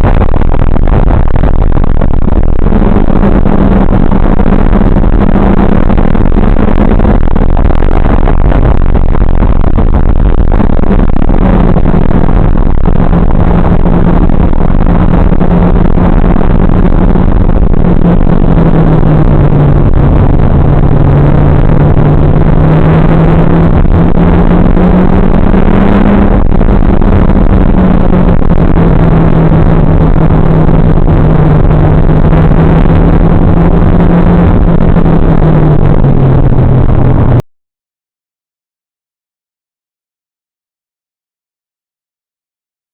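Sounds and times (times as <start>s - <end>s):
road and wind noise: 0.0s - 37.4s
car engine under load: 10.8s - 37.4s.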